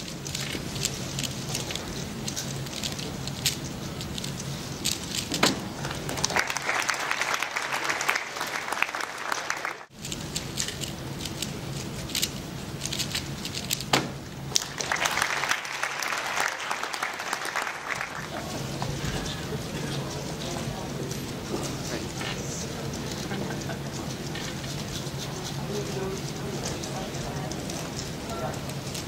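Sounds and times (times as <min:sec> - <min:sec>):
audience applauding and cheering: 0:05.8 - 0:09.9, 0:14.5 - 0:18.5.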